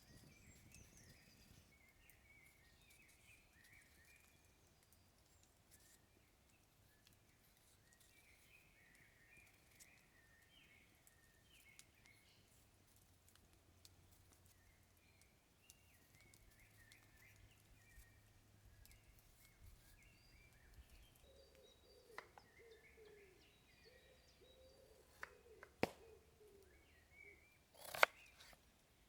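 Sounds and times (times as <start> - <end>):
small birds chirping: 0.0 - 29.0
sharp clicks: 27.8 - 28.6.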